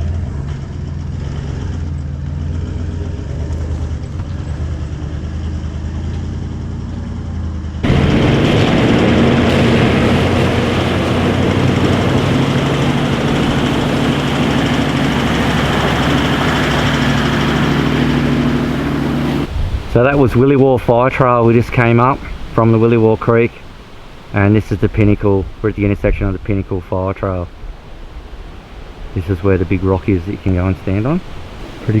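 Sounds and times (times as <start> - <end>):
vehicle engine climbing: 0.0 - 32.0.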